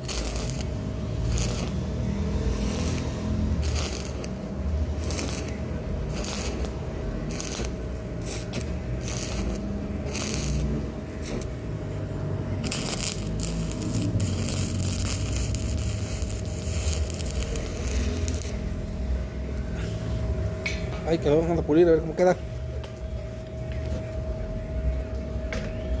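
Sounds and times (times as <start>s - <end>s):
arc welding crackling: 0.0s - 19.8s.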